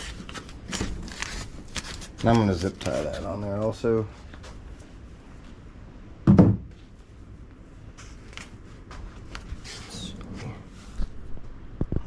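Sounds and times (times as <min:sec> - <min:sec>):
rustle of things handled: 0:00.0 - 0:05.6, 0:06.8 - 0:11.2
heavy thump: 0:06.2 - 0:06.7.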